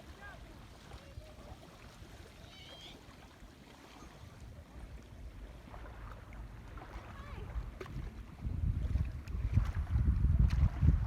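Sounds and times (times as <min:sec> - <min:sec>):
water washing at shore: 0:00.0 - 0:11.0
wind rumbling on microphone: 0:04.3 - 0:11.0.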